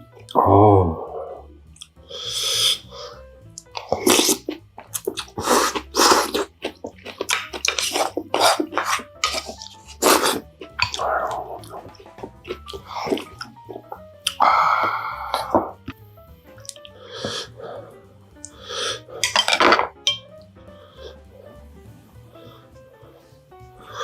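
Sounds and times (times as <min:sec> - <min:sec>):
wet chewing and crunching: 0:01.7 - 0:16.0, 0:16.6 - 0:17.6, 0:18.4 - 0:20.3
breathy burst: 0:09.8 - 0:15.8, 0:16.9 - 0:19.4.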